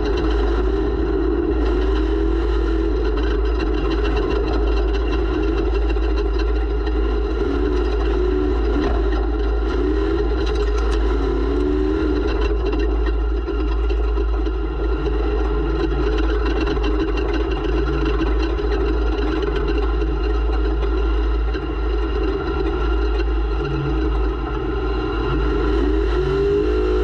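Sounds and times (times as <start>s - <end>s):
engine rumbling: 0.0s - 27.0s.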